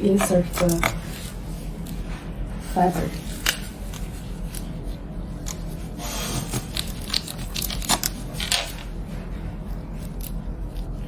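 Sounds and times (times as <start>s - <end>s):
fiber cable rustling: 0.0s - 11.0s
steady low hum: 0.0s - 11.0s.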